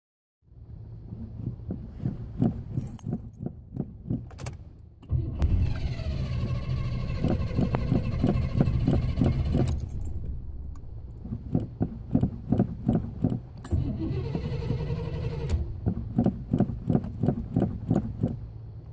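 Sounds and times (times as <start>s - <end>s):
starter motor cranking engine: 5.0s - 9.9s, 11.5s - 18.4s
uneven low engine pulses: 5.0s - 18.9s.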